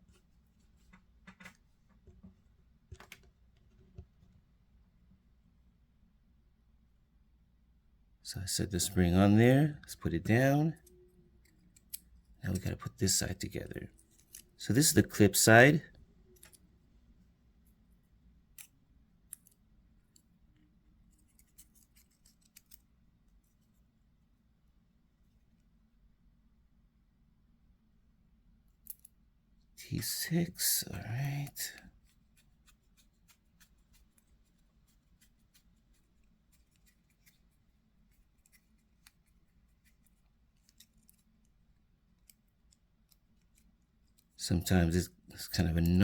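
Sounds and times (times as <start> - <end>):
small metal parts clicking: 21.2 - 22.9, 28.8 - 29.1, 38.1 - 41.3.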